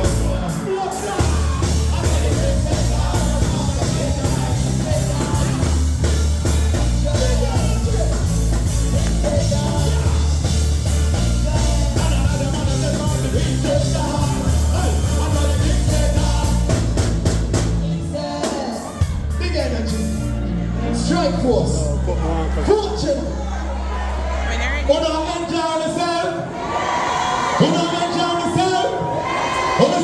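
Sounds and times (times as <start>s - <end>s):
person singing: 0.0s - 17.0s
pulsing bass line: 1.2s - 18.1s.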